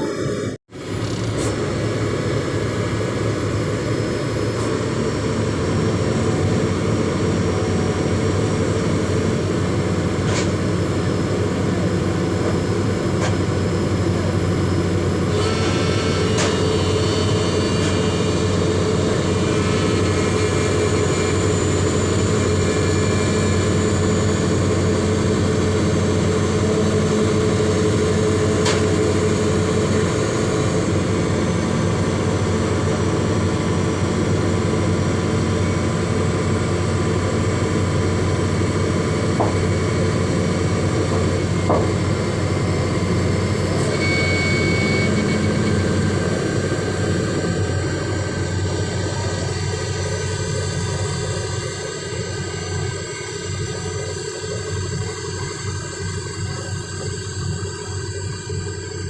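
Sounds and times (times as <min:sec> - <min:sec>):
excavator diesel engines running: 0:00.0 - 0:59.0.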